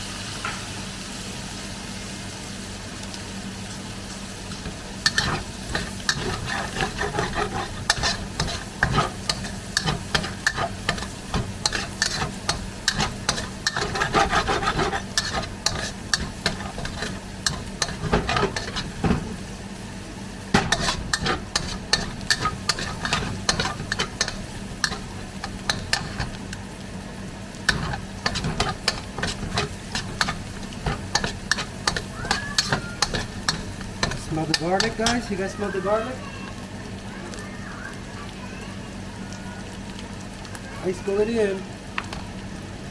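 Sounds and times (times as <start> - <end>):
garlic sizzling in hot oil: 0.0 - 42.9
utensil scraping a pan: 4.5 - 19.4, 20.6 - 26.4, 27.7 - 35.5.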